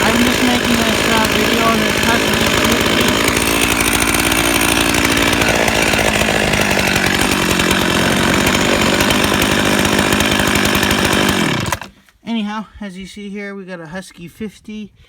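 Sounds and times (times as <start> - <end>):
chainsaw running: 0.0 - 12.0.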